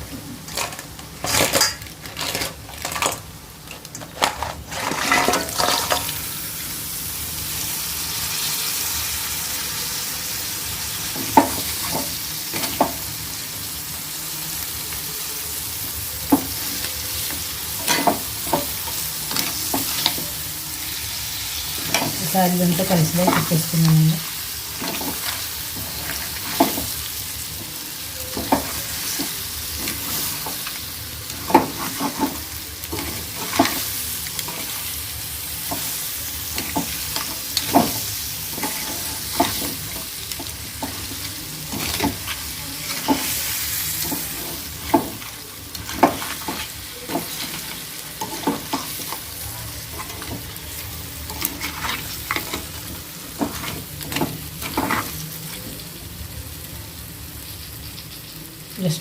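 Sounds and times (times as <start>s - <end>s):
crabs sizzling in oil: 0.0s - 59.0s
spatula scraping pan: 4.1s - 6.1s, 28.2s - 35.0s.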